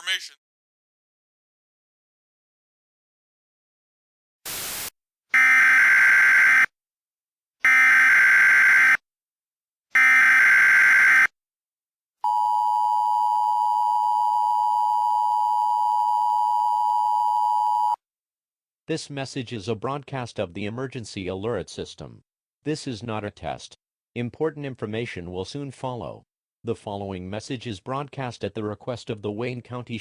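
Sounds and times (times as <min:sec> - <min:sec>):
burst of static: 0:04.5 - 0:04.9.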